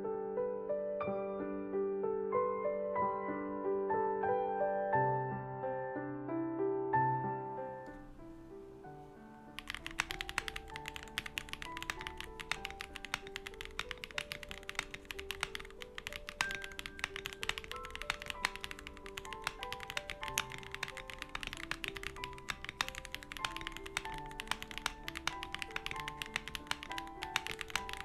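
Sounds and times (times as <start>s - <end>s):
piano background music: 0.0s - 28.0s
mechanical keyboard typing: 9.6s - 28.0s.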